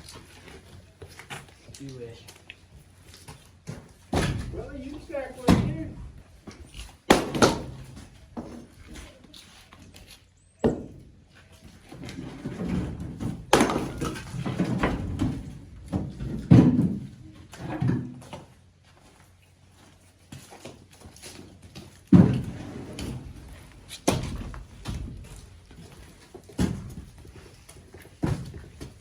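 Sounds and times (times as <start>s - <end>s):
heavy wooden thuds of firewood: 3.3s - 9.1s, 12.0s - 18.5s, 21.7s - 29.0s.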